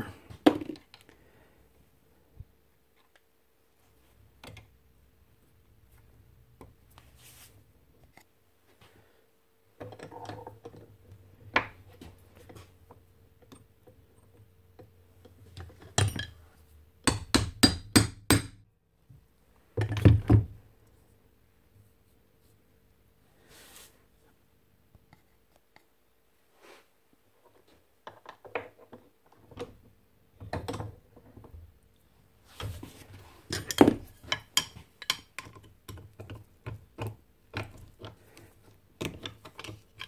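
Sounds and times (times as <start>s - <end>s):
metal tools clinking on workbench: 15.9s - 16.4s.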